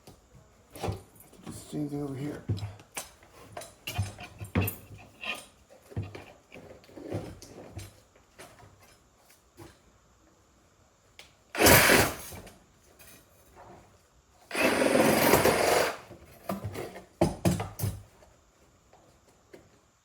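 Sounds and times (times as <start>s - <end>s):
power tool running in bursts: 11.6s - 12.3s, 14.5s - 16.0s.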